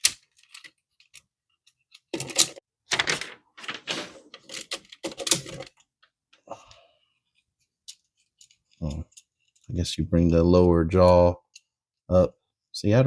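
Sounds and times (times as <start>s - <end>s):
plastic toy parts clicking and rattling: 0.0s - 5.9s, 7.8s - 9.8s.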